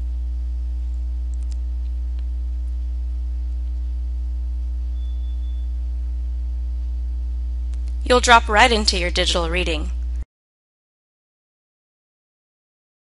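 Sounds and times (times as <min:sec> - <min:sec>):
steady low hum: 0:00.0 - 0:10.2
faint clicks: 0:01.3 - 0:02.3.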